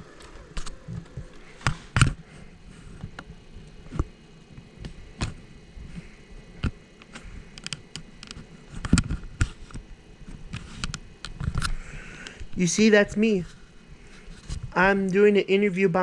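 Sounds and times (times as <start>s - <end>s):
faint steady background noise: 0.0s - 16.0s
sharp clicks and light knocks: 6.6s - 12.6s.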